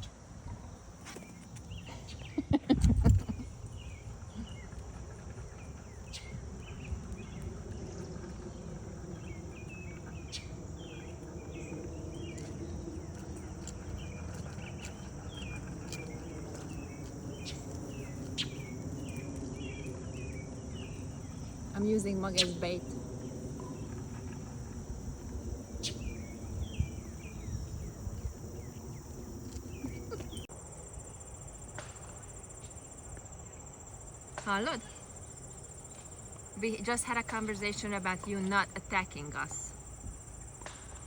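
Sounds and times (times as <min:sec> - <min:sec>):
insects droning: 0:00.0 - 0:41.0
short insect chirps: 0:20.8 - 0:32.9.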